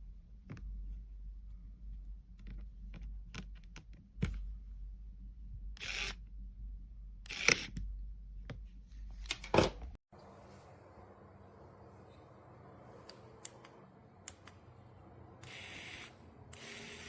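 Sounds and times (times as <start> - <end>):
low hum: 0.0 - 9.3.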